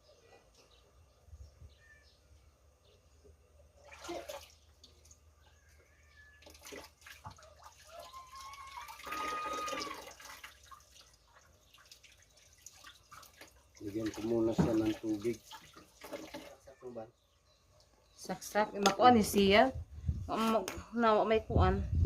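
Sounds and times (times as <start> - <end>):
water pouring and splashing: 3.8 - 5.2, 6.3 - 16.7.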